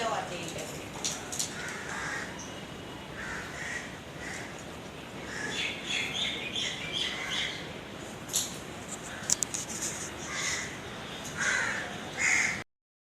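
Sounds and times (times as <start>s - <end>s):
low street hum: 0.0s - 12.6s
crows cawing: 1.3s - 2.4s, 3.2s - 4.6s, 5.3s - 5.7s, 10.3s - 10.8s, 11.4s - 12.6s.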